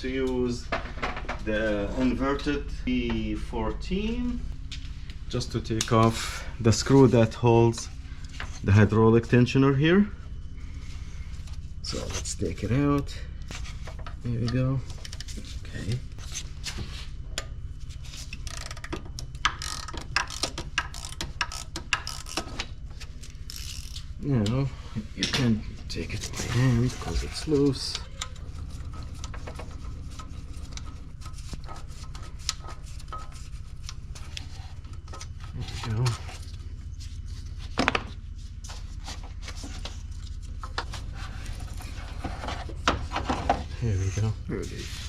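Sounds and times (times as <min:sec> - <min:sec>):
steady low hum: 0:00.0 - 0:45.0
hand ratchet clicking: 0:18.4 - 0:22.6, 0:23.2 - 0:24.1.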